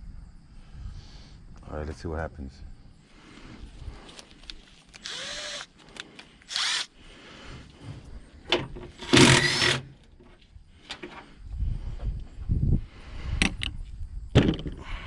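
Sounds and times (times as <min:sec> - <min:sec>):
clicks of tool and parts: 0:04.1 - 0:06.6
power drill spinning: 0:04.9 - 0:07.0, 0:09.0 - 0:09.9.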